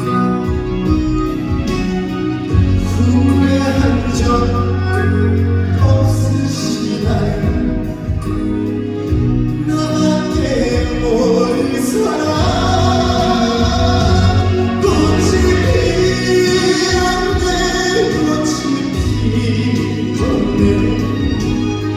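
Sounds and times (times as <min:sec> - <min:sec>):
band accompaniment: 0:00.0 - 0:21.9
man singing a slow ballad: 0:02.7 - 0:21.9
people singing along: 0:09.7 - 0:21.9.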